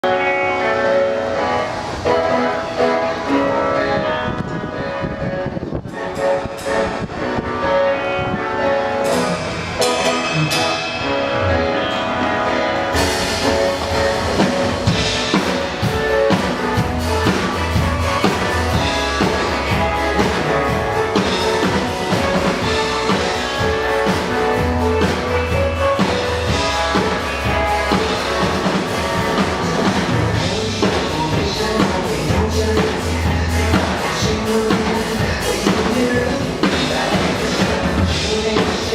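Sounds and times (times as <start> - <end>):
instrumental pop band music: 0.0 - 38.9
heavy bass line: 9.0 - 38.9
drum and cymbal hits: 13.0 - 38.9.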